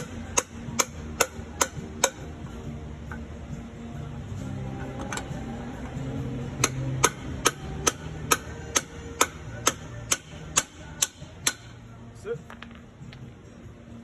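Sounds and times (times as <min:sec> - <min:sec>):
hammer tapping metal bushing: 0:00.0 - 0:02.3, 0:04.8 - 0:11.8.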